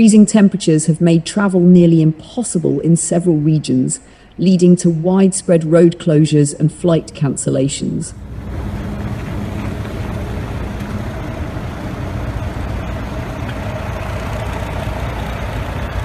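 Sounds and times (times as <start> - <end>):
rushing noise: 8.2 - 16.0
vehicle engine running: 8.2 - 16.0.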